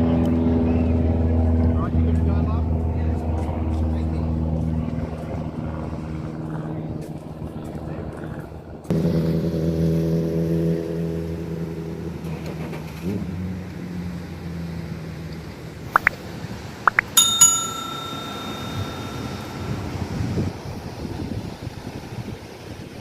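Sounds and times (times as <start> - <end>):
bell struck and ringing: 16.9 - 20.5.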